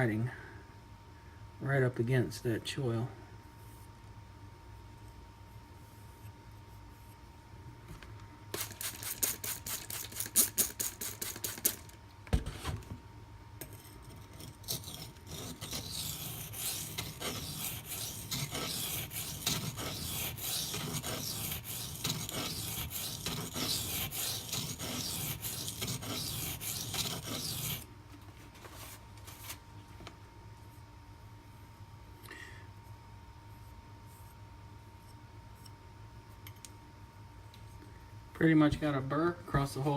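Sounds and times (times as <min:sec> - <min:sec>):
knife scraping on sharpening stone: 0:14.4 - 0:27.8.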